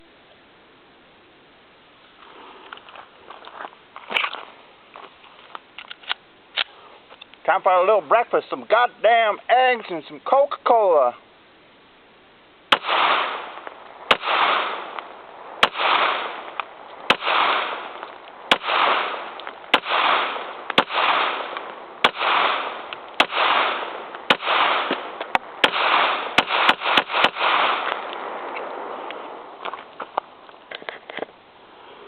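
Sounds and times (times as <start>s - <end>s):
pistol shots with echo: 12.7s - 16.5s, 17.1s - 28.4s.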